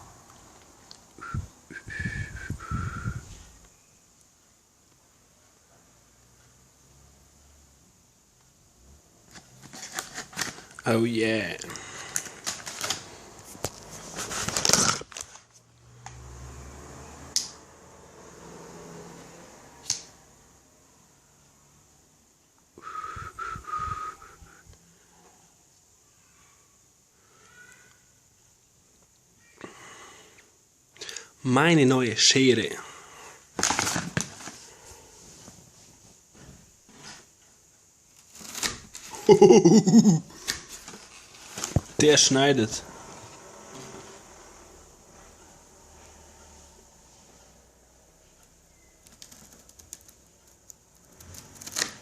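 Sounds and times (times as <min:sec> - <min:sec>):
packaging rustling and crinkling: 0:09.3 - 0:10.8, 0:12.0 - 0:15.6, 0:33.6 - 0:34.7, 0:40.4 - 0:42.1.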